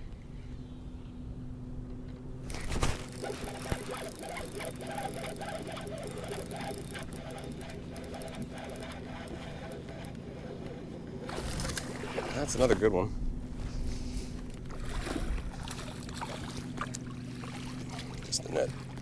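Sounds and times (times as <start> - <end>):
fish splashing in water: 2.5 - 12.5, 14.6 - 19.0.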